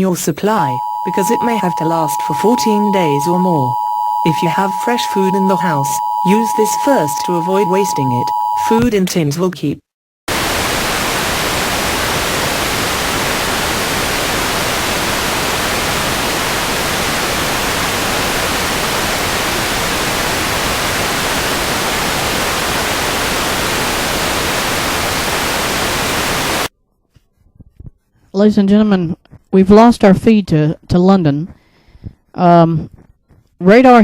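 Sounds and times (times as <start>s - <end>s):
white noise static hiss: 10.3s - 26.7s.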